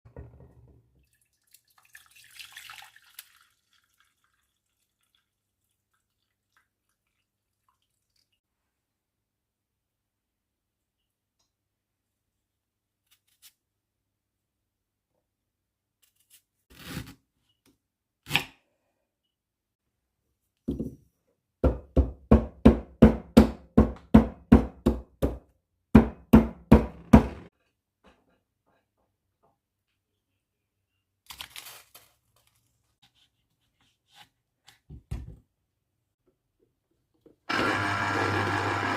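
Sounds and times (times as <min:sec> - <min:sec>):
liquid splashing: 0:01.0 - 0:08.4
water dripping: 0:01.0 - 0:08.4.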